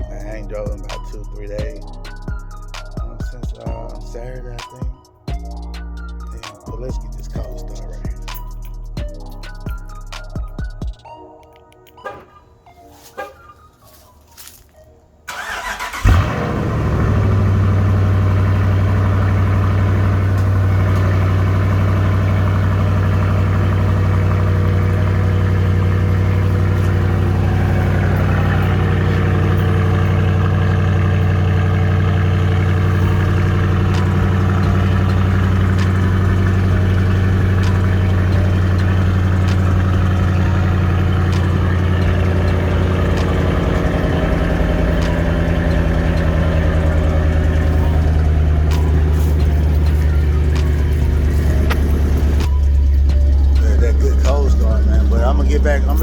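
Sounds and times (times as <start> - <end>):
car engine cranking: 0.0 - 4.7, 15.3 - 56.0
car engine idling: 0.0 - 4.7, 15.3 - 56.0
engine revving: 15.3 - 56.0.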